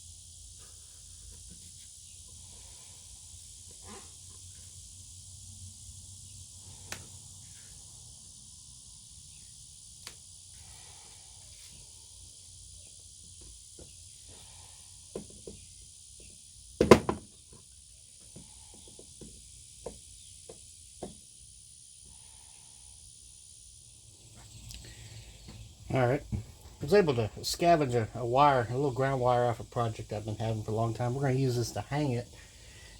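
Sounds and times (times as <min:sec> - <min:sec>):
steady high hiss: 0:00.0 - 0:18.5, 0:19.3 - 0:32.9
loud knock: 0:16.8 - 0:17.2.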